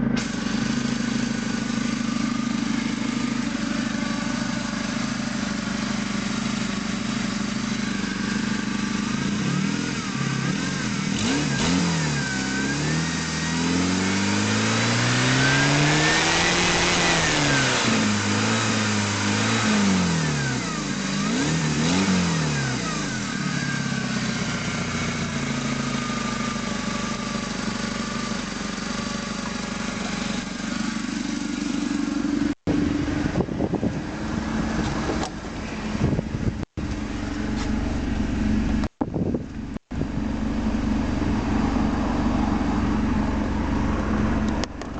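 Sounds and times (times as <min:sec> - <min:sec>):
car engine idling and revving: 0:00.0 - 0:44.9.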